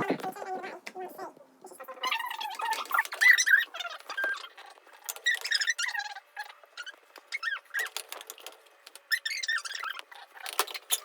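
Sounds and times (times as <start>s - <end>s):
high-pitched squeaks and chirps: 1.9s - 8.0s, 9.1s - 10.4s.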